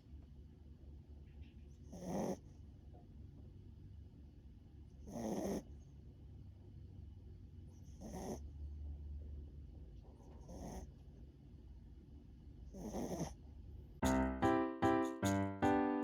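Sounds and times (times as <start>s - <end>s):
dog snoring: 1.9s - 2.4s, 5.0s - 5.7s, 7.8s - 8.4s, 10.4s - 10.9s, 12.7s - 13.4s
piano music: 14.0s - 16.0s.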